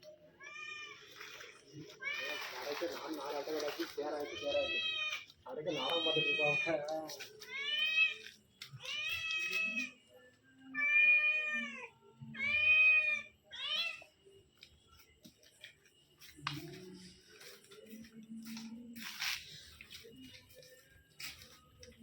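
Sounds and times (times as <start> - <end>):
cat meowing: 4.2 - 10.0, 10.7 - 14.1
faint scuffing: 15.0 - 22.0.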